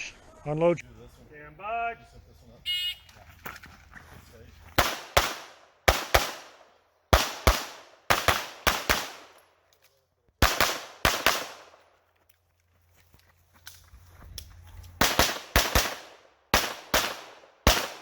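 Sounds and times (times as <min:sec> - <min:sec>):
pistol shots in quick pairs: 0:04.8 - 0:09.4, 0:10.4 - 0:11.8, 0:15.0 - 0:18.0.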